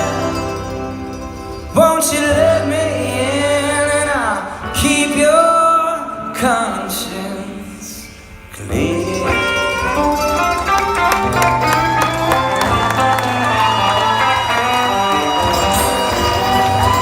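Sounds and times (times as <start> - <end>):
live band music: 0.0 - 5.7, 8.5 - 17.0
person singing long notes: 8.6 - 17.0.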